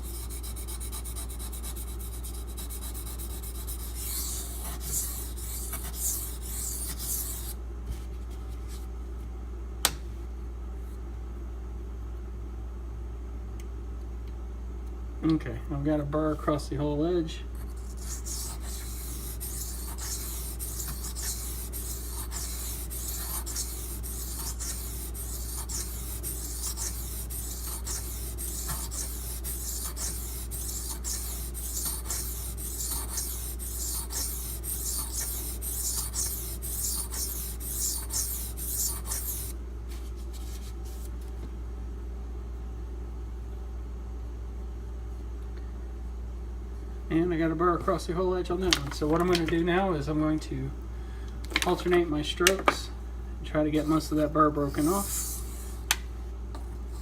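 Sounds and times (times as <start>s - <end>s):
knife scraping on whetstone: 17.9s - 39.5s.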